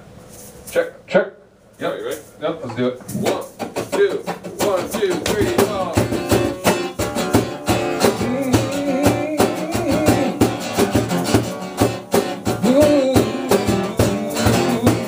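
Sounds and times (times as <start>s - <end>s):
steady beat: 3.0s - 15.0s
strummed acoustic guitar: 3.0s - 15.0s
bending lead guitar line: 3.1s - 15.0s
live band playing: 3.2s - 15.0s.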